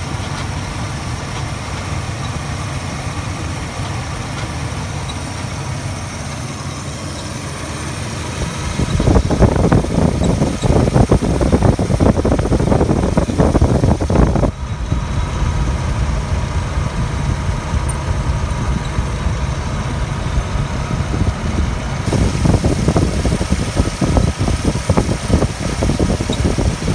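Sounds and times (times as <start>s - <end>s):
engine idling: 0.0s - 26.9s
engine squealing chirp: 4.8s - 12.2s.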